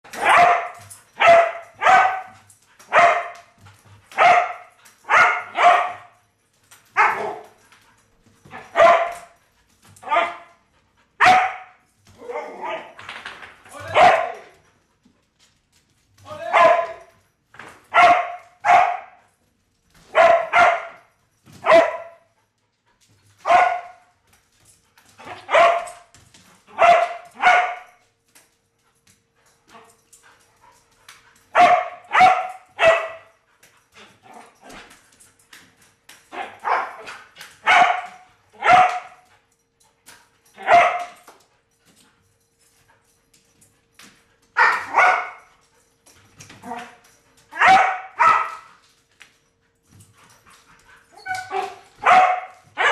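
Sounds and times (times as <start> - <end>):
dog barking sharply: 0.2 - 2.3, 11.2 - 11.8, 31.6 - 33.2, 44.6 - 45.4, 47.6 - 48.6.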